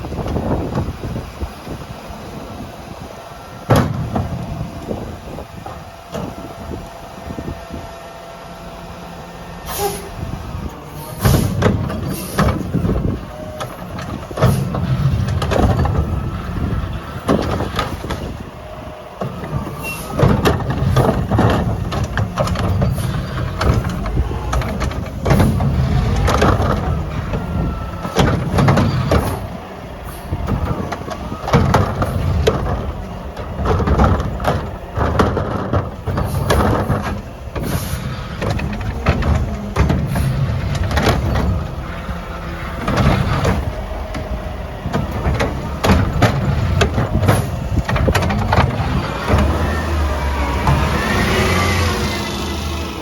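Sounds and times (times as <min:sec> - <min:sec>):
diesel engine running: 0:00.0 - 0:53.0
knocks and clatter: 0:11.2 - 0:18.5, 0:19.2 - 0:53.0.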